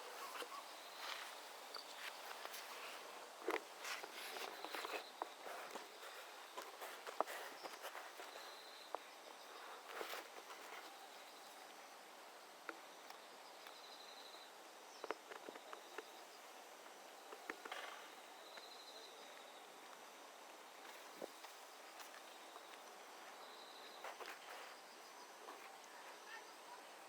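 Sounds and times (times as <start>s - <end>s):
small clicks and rustles: 0.1s - 11.6s, 19.9s - 26.2s.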